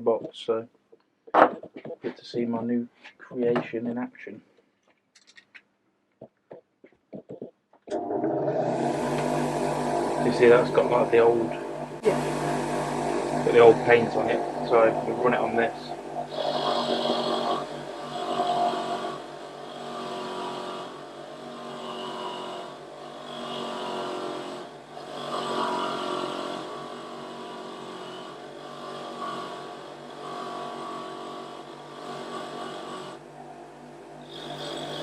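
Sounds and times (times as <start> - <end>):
motor-driven tool stripping paint: 13.5 - 33.2.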